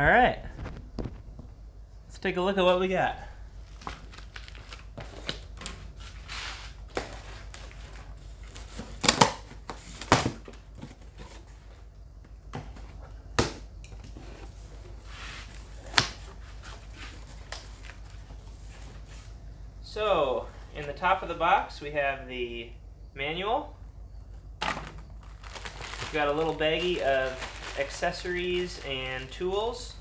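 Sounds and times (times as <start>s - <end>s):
tape tearing on cardboard box: 8.5s - 10.4s.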